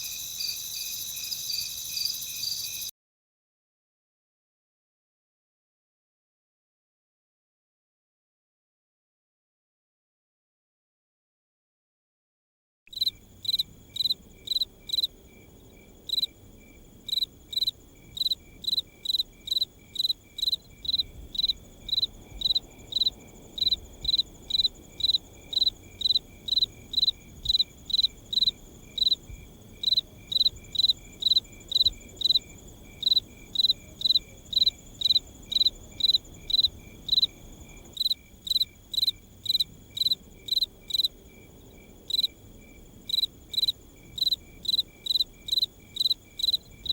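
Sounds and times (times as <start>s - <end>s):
cricket chirping: 0.0s - 2.9s, 12.9s - 46.9s.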